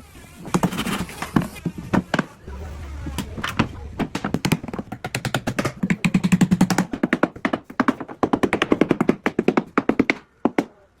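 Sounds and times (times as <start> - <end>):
hard knocks and taps: 4.0 - 10.8.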